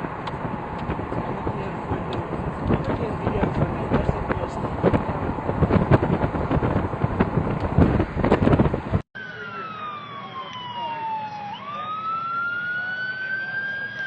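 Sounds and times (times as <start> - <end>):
rushing crackling roar: 0.0 - 9.0
emergency vehicle siren wailing: 9.2 - 14.0.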